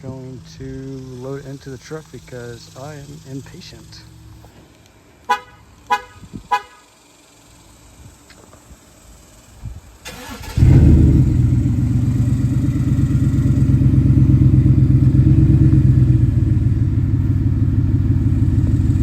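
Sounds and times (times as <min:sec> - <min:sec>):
engine idling deep and loud: 0:00.0 - 0:04.6, 0:10.1 - 0:19.0.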